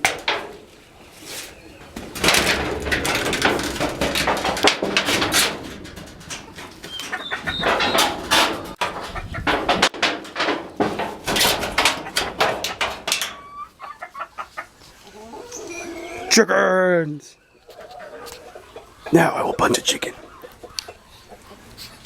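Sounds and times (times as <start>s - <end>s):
rustling and thumping clatter: 0.0s - 13.4s
chickens clucking and squawking: 0.0s - 22.0s.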